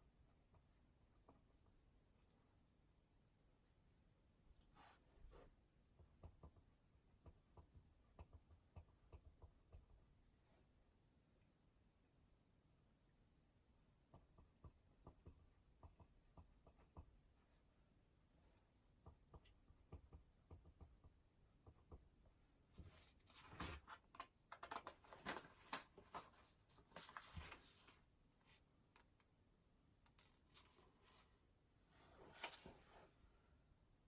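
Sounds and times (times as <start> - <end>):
paper scratching and rustling: 24.6 - 27.9.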